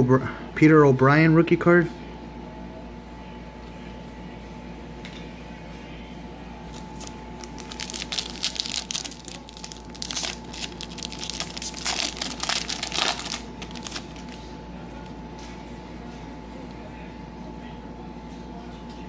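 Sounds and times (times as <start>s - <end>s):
foil wrapper crinkling and tearing: 6.7s - 15.2s.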